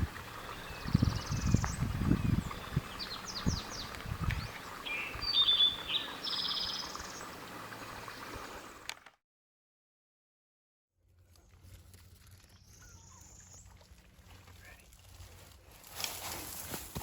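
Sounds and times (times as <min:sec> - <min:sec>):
songbirds chirping and trilling: 0:00.1 - 0:08.8, 0:12.5 - 0:13.8.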